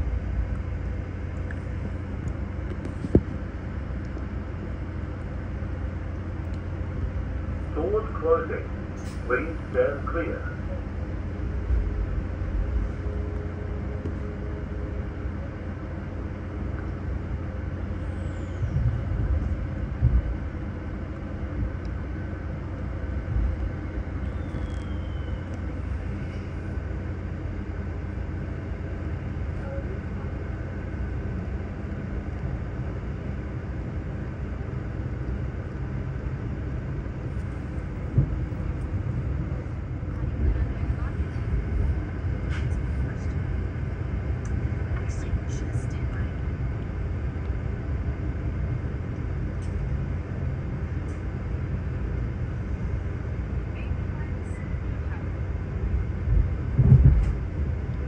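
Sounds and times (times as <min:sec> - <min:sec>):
train interior low rumble: 0:00.0 - 0:58.0
faint brief squeaks: 0:24.3 - 0:25.4.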